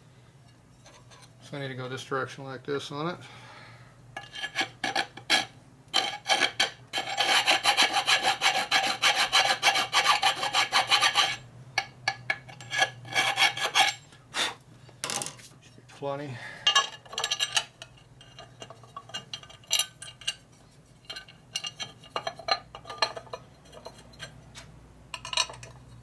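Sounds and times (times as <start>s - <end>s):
hand file rasping on metal: 4.2s - 11.4s, 12.3s - 14.0s.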